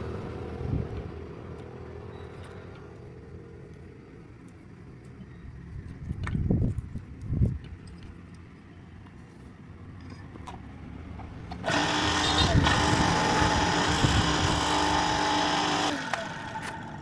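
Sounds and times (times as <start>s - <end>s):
electric water pump motor humming: 11.6s - 17.0s.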